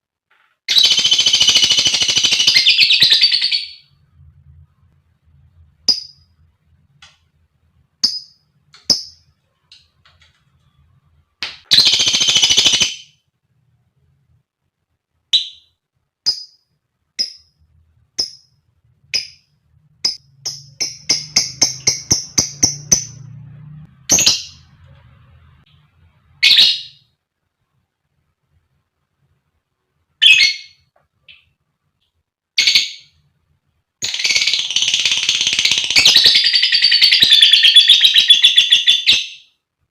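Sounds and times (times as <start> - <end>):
lovebird sharp chirps: 5.9 - 6.3, 15.3 - 17.6, 19.1 - 23.3, 30.2 - 31.5.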